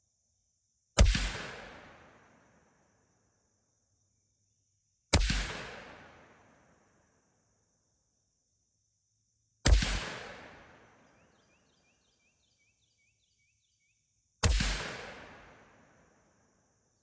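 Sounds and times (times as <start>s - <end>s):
rifle shots with echo: 1.0s - 2.3s, 5.2s - 6.5s, 9.6s - 11.5s, 14.4s - 15.9s.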